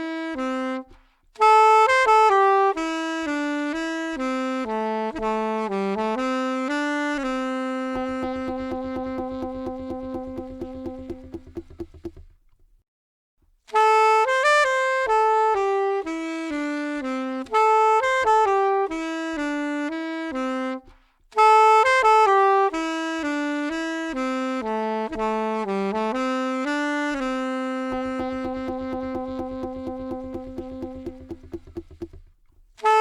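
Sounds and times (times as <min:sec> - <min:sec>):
saxophone melody: 0:00.0 - 0:12.3, 0:13.7 - 0:33.0
light backing beat: 0:05.1 - 0:12.6, 0:25.1 - 0:32.9.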